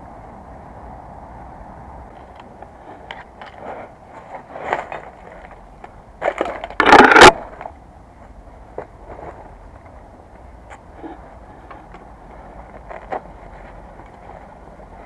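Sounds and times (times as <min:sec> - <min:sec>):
crunching and scraping footsteps: 0:02.2 - 0:07.8, 0:11.6 - 0:15.0.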